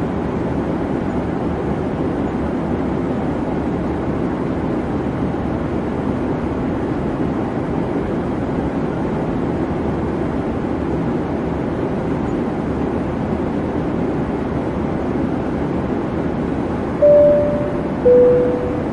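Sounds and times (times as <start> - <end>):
chime tone: 17.0 - 18.9.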